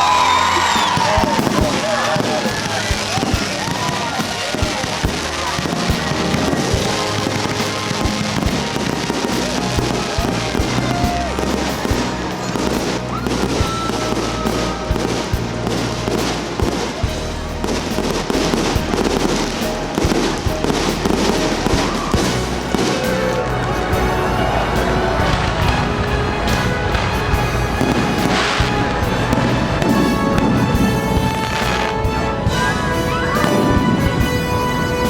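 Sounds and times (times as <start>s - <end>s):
fireworks bursting: 0.0s - 35.0s
fireworks crackling: 0.0s - 35.0s
music playing: 0.0s - 35.0s.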